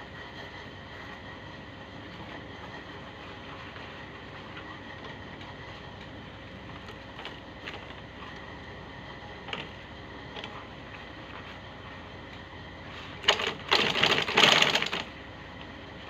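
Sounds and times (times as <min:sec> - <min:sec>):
sewing machine whirring: 0:06.6 - 0:12.0, 0:12.8 - 0:15.4.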